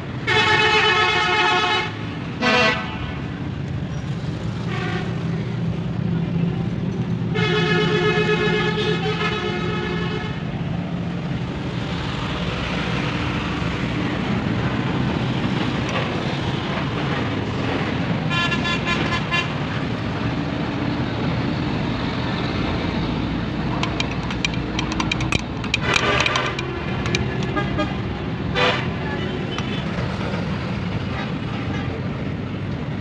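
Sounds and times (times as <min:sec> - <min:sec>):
road traffic: 0:00.0 - 0:33.0
vehicle horns tooting: 0:18.3 - 0:19.6, 0:24.8 - 0:29.8.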